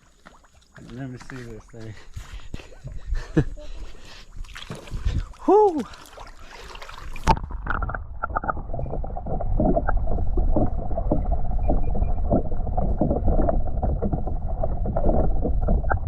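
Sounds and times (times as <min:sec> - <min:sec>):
muffled water sloshing underwater: 0:02.9 - 0:16.0
knocks underwater: 0:07.1 - 0:16.0.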